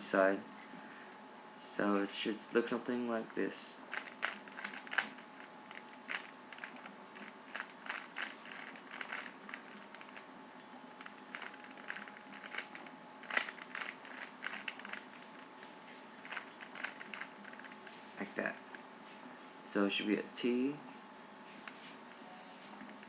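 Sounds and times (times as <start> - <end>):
cube snapping: 3.9 - 10.2, 11.0 - 15.1
rubik's cube clicking: 3.9 - 10.2, 11.0 - 15.5, 16.2 - 17.8.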